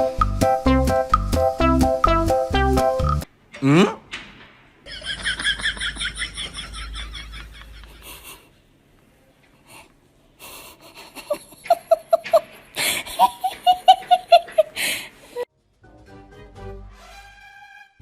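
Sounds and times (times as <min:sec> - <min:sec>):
person laughing wheezily: 0:06.8 - 0:08.5, 0:10.4 - 0:15.4.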